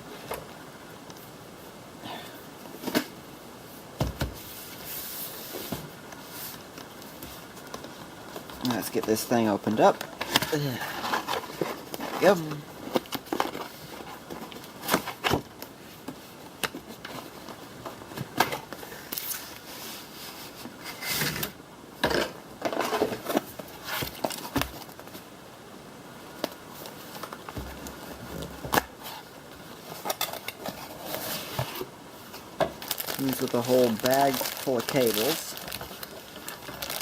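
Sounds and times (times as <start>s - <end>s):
packaging rustling: 4.7s - 19.7s, 22.7s - 25.3s, 26.3s - 37.0s.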